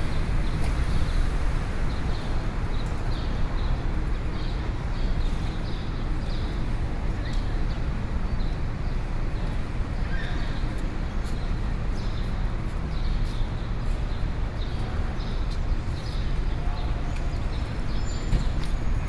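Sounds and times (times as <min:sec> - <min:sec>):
distant traffic rumble: 0:00.0 - 0:10.0.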